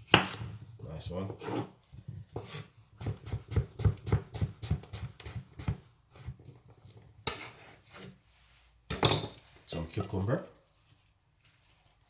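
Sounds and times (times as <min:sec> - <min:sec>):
knife chopping on cutting board: 0:02.4 - 0:06.3.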